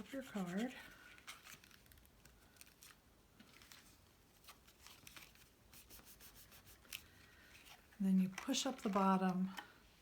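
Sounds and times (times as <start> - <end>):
cardstock rustling and ticking: 6.8 - 9.7.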